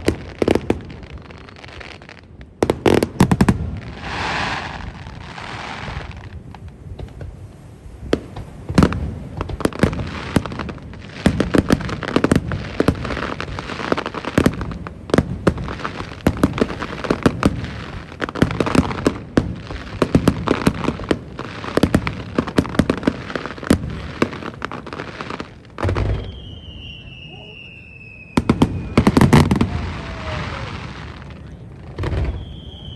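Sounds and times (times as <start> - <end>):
fireworks bangs: 0.0 - 7.4, 8.0 - 32.9
fireworks crackling: 0.0 - 32.9.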